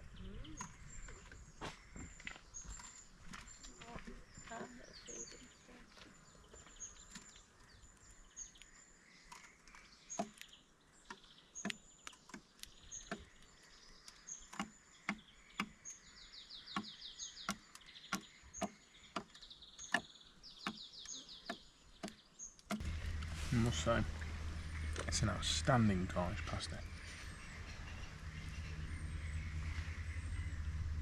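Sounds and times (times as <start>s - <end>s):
birds chirping: 0.0s - 31.0s
bird rattling trills: 22.8s - 31.0s.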